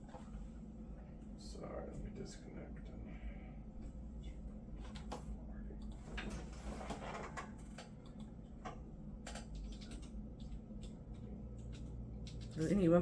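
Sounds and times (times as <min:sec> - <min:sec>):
faint steady low hum: 0:00.0 - 0:13.0.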